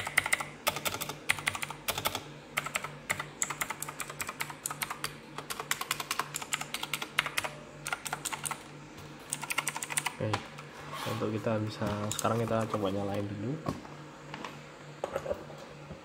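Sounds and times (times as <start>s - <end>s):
mechanical keyboard typing clicks: 0.0s - 8.6s, 9.3s - 10.2s.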